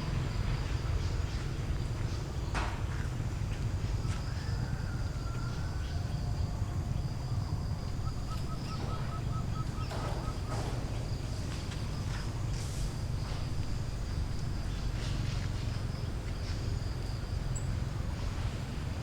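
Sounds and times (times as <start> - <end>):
high insect drone: 0.0 - 19.0.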